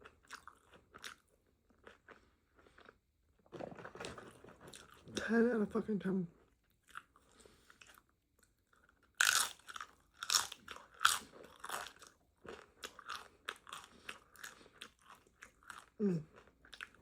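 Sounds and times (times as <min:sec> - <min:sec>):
crunchy bite into a taco: 0:08.7 - 0:17.0
crunchy chewing: 0:08.7 - 0:17.0.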